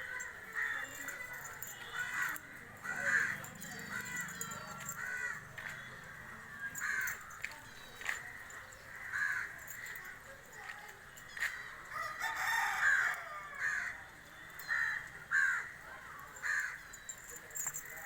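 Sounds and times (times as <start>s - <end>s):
crow cawing: 0.0s - 7.4s, 8.9s - 10.1s, 12.3s - 14.0s, 14.7s - 15.8s, 16.4s - 16.8s.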